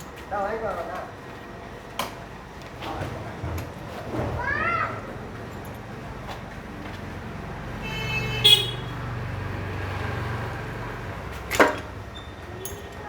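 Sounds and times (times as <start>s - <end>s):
vehicle passing: 7.1s - 11.6s.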